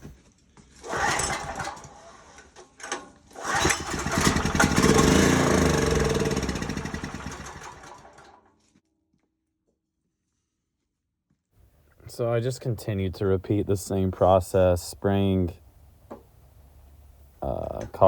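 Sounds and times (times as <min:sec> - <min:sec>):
generator engine cranking and running: 0:00.8 - 0:08.4.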